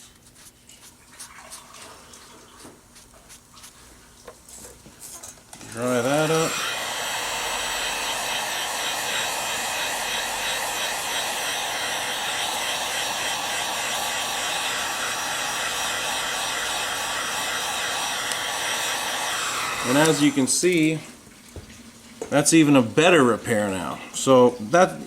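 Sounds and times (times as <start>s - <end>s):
hot-air dryer blowing: 5.6s - 21.0s.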